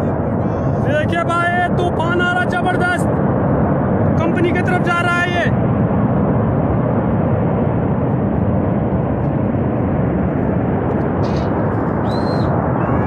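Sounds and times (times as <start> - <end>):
high whistle-like tone: 12.0 - 12.5.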